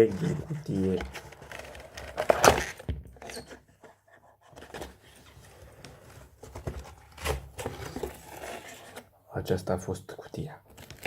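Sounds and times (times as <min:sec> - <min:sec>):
packaging clicks and rustles: 0:10.7 - 0:11.0.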